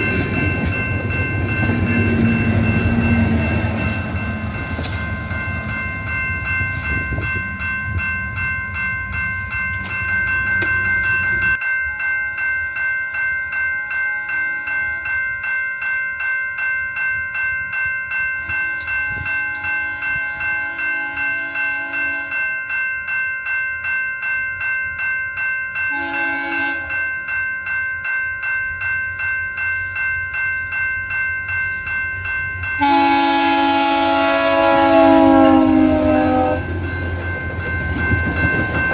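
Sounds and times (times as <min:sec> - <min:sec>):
train rumbling past: 0:00.0 - 0:11.6, 0:31.5 - 0:38.9
level-crossing bell ringing: 0:00.0 - 0:38.9
locomotive horn: 0:19.5 - 0:22.4, 0:25.9 - 0:27.0, 0:32.8 - 0:36.7
low horn tones: 0:32.8 - 0:36.8.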